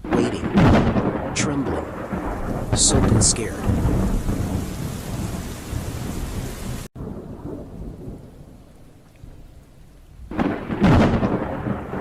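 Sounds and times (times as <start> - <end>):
low rumble of thunder: 0.0 - 12.0
rain hissing: 0.0 - 12.0.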